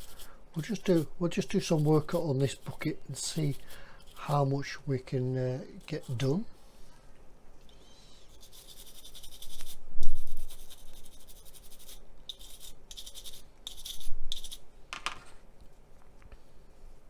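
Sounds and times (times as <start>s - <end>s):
stiff brush scrubbing: 0.0s - 6.6s, 8.3s - 14.6s.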